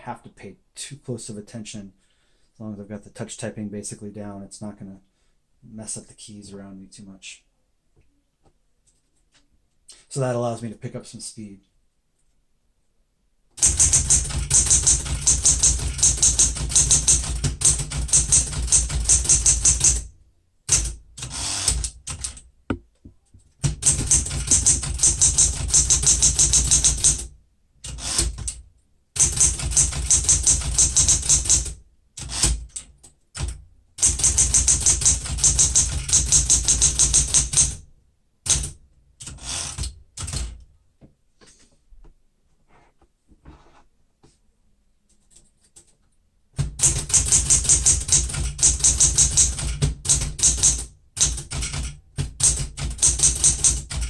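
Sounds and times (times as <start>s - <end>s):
manual typewriter keystrikes: 13.6s - 20.1s, 23.6s - 27.2s, 46.6s - 54.0s.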